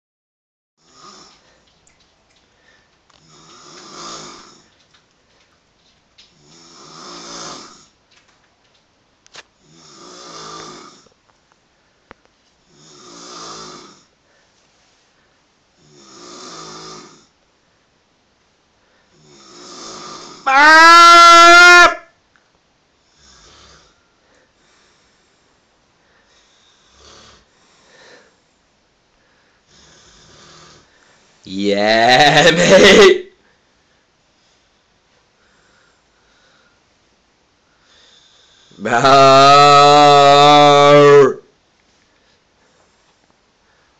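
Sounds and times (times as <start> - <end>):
person snoring: 0.8 - 1.4, 3.2 - 4.7, 6.3 - 8.0, 9.6 - 11.1, 12.6 - 14.1, 15.8 - 17.3, 19.1 - 20.8, 23.0 - 24.0, 26.2 - 28.4, 29.6 - 30.9, 31.5 - 33.1, 37.9 - 41.4
faint short breaths: 1.2 - 3.0, 23.9 - 29.7, 33.4 - 37.0.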